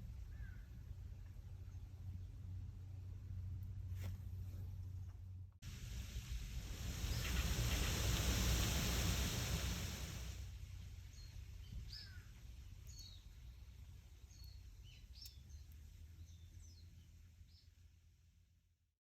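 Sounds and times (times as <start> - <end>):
low wind rumble: 0.0 - 17.0
wind rustling through leaves: 5.6 - 16.9.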